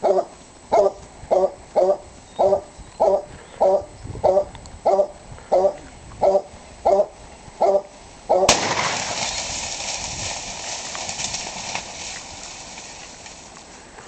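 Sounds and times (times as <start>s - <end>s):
dog barking: 0.0s - 8.5s
sharp crack: 8.5s - 13.7s.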